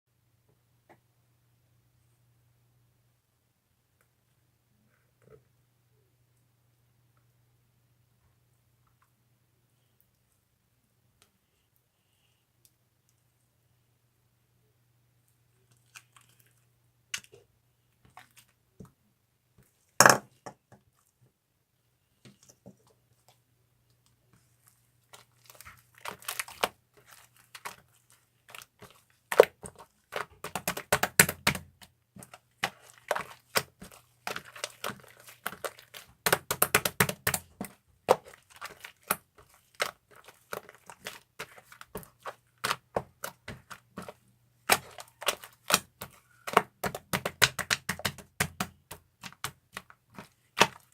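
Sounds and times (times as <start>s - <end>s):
slime crackling and popping: 25.1s - 50.9s.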